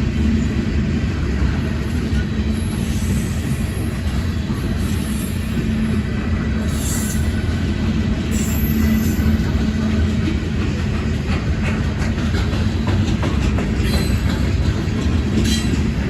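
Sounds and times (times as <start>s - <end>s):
freight train rumbling past: 0.0s - 16.0s
wheels clicking over rail joints: 8.3s - 16.0s.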